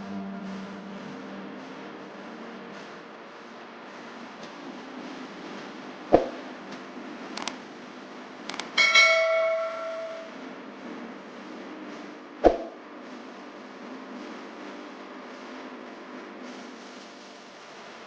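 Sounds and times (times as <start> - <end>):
sharp thumps: 6.2 - 6.4, 12.5 - 12.8
metallic ding: 8.8 - 10.3.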